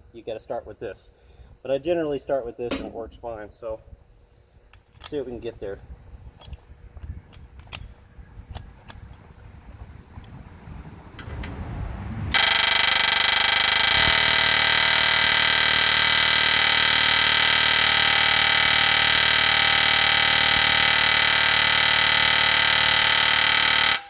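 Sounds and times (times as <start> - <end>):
pneumatic air hammer on steel: 2.7 - 3.2, 12.3 - 24.0.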